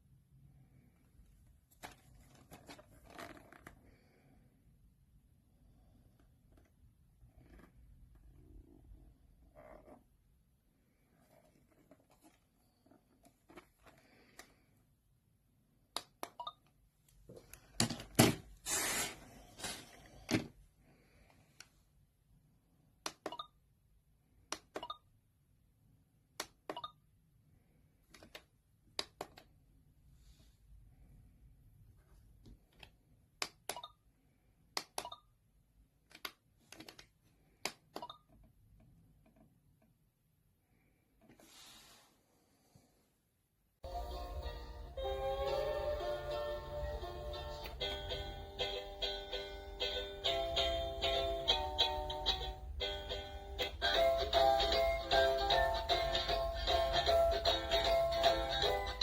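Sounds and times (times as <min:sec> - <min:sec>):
object scraping and rustling: 0:18.5 - 0:20.2, 0:41.3 - 0:42.4
plastic toy buttons clicking: 0:24.5 - 0:25.0, 0:32.8 - 0:33.9, 0:34.8 - 0:35.2.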